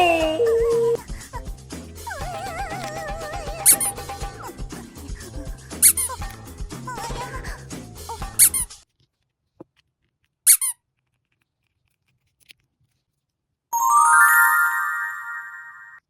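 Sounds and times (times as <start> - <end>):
cheerful background music: 0.0 - 8.6, 13.8 - 16.0
sustained electronic chime: 13.8 - 16.0.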